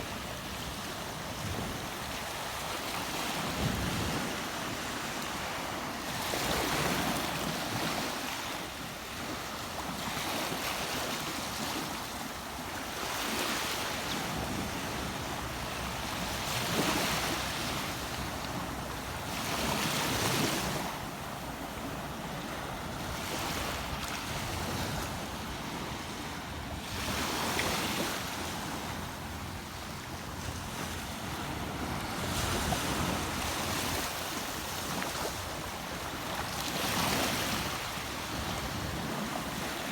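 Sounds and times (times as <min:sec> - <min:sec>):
wind on microphone: 0:14.2 - 0:39.9.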